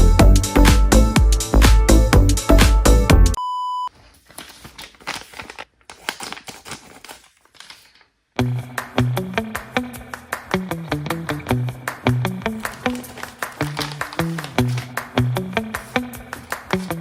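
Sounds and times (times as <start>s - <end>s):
electronic music with beat: 0.0s - 3.4s
short steady beep: 3.4s - 3.9s.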